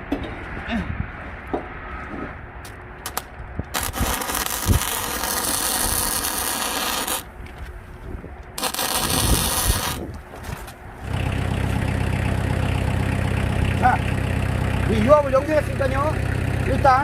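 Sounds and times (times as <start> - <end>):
harsh scraping noise: 3.8 - 7.4, 8.6 - 11.2
engine idling: 11.0 - 17.0.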